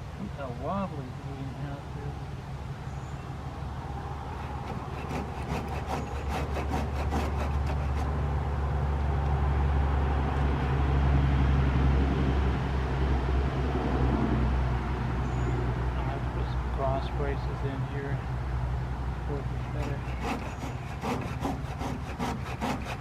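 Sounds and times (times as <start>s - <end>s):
passing vehicle engine rumble: 8.0s - 20.1s.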